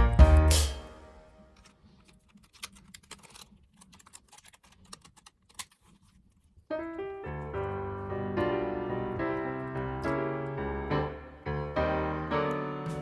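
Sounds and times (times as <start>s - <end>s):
piano music: 0.0s - 1.4s, 6.7s - 13.0s.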